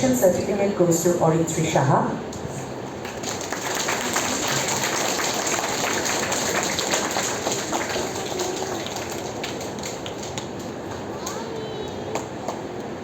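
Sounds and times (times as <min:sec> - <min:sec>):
audience applauding: 0:03.0 - 0:12.7.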